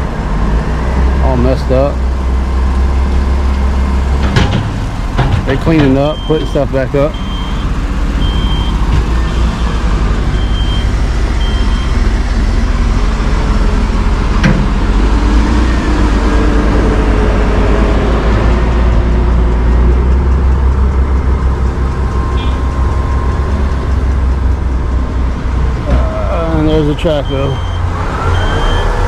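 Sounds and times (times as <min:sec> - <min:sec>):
heavy machinery rumbling: 0:00.0 - 0:29.0
backup alarm beeping: 0:05.8 - 0:12.0, 0:20.7 - 0:24.0, 0:26.4 - 0:29.0.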